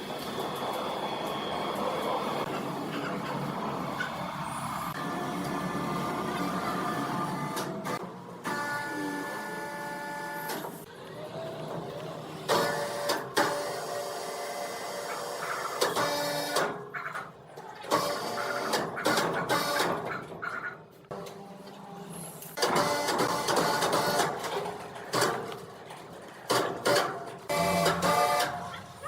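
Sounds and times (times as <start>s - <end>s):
sawmill machinery whine: 0.0s - 16.6s.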